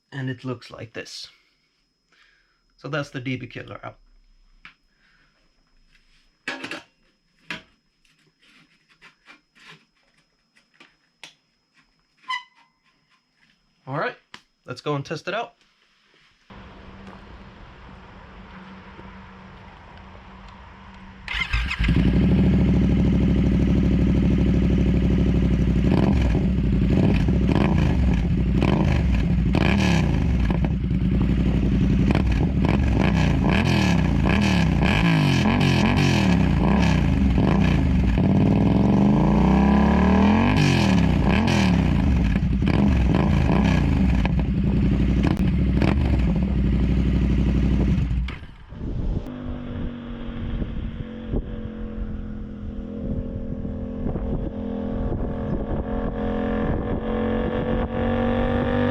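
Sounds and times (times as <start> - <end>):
motorcycle engine revving: 16.6 - 58.9.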